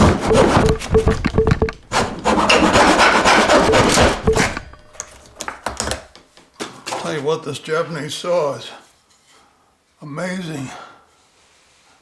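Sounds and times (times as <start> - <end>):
saw rasping through wood: 1.9 - 4.3.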